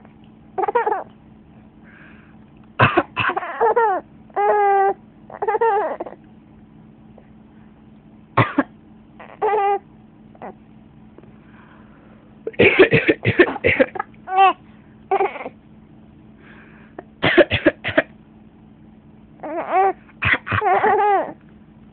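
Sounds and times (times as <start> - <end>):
person coughing: 2.8 - 3.6, 8.4 - 8.7, 12.5 - 14.1, 17.2 - 18.1, 20.2 - 21.1.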